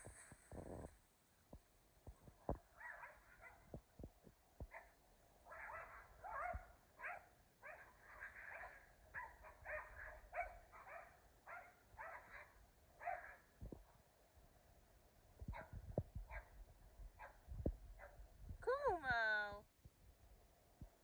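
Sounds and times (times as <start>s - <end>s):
dog barking and yipping: 2.8s - 3.7s, 5.5s - 13.4s.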